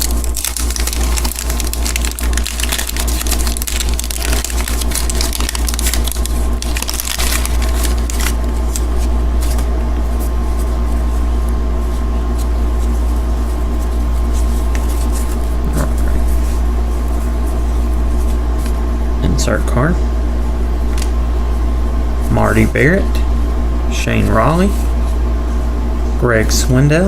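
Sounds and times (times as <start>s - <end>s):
wax paper wrapper tearing: 0.0s - 9.7s
low steady hum: 0.0s - 27.0s.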